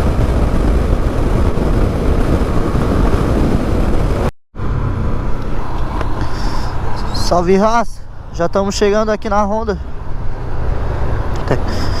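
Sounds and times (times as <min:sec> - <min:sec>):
motorcycle engine running: 0:00.0 - 0:04.3
wind noise on microphone: 0:00.0 - 0:07.7.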